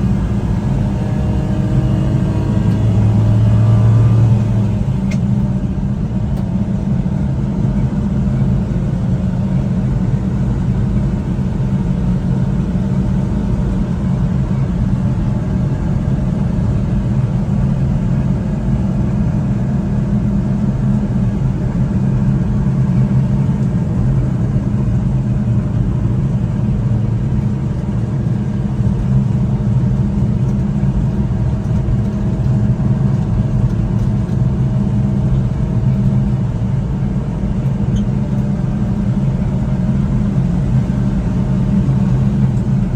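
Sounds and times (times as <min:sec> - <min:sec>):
road noise: 0:00.0 - 0:07.0, 0:30.8 - 0:42.9
truck engine running: 0:00.0 - 0:15.2, 0:20.6 - 0:42.9.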